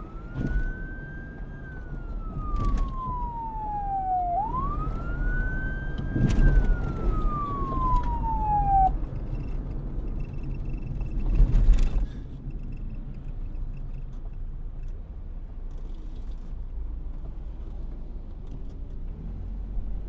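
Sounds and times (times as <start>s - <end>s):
police siren wailing: 0.0s - 9.0s
low vehicle rumble: 0.0s - 20.0s.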